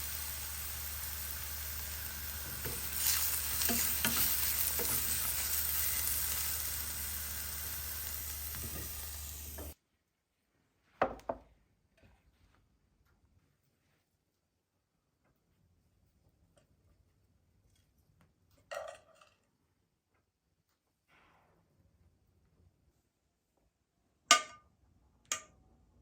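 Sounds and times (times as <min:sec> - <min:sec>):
food sizzling in oil: 0:00.0 - 0:09.8
utensil scraping pan: 0:02.3 - 0:09.8.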